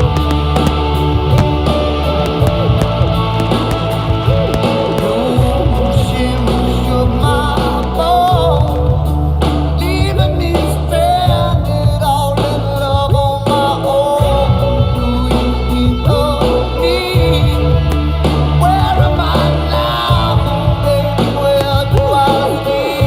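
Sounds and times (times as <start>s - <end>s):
heavy bass line: 0.0s - 12.4s
rock or pop song with singing: 0.0s - 23.0s.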